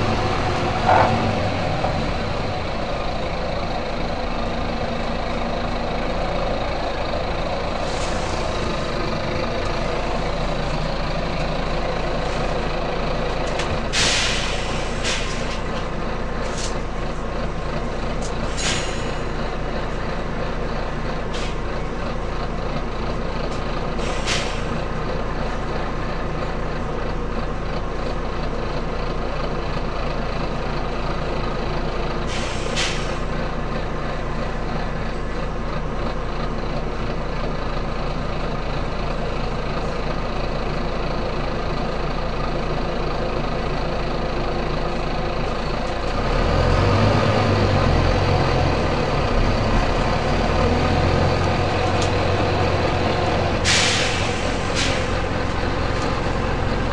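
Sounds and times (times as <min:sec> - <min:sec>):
bus engine running: 0:00.0 - 0:56.9
compressed air hisses: 0:13.9 - 0:15.5, 0:24.0 - 0:24.7, 0:32.3 - 0:33.2, 0:53.6 - 0:55.2.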